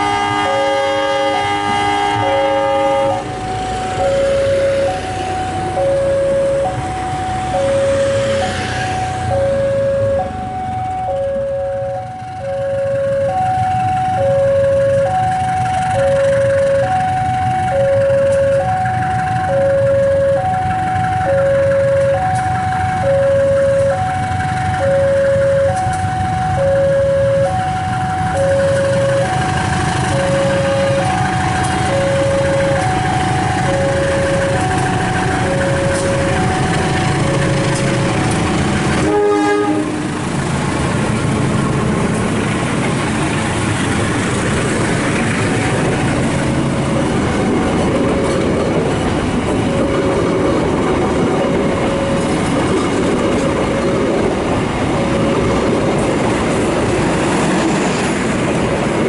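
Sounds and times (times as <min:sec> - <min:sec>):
train wheels rumbling on rails: 0:00.0 - 0:59.0
level crossing two-note alarm: 0:04.0 - 0:38.2.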